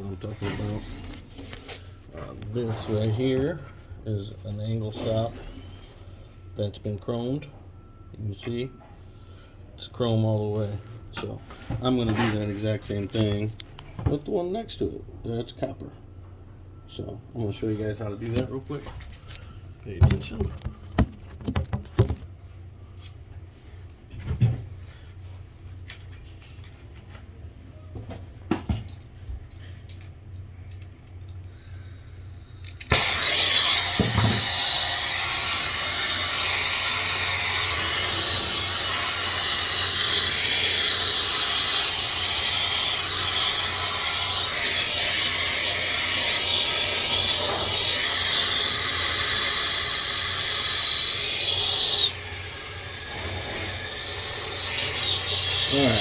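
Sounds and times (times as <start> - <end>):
gas torch hissing and whistling: 31.5 - 56.0.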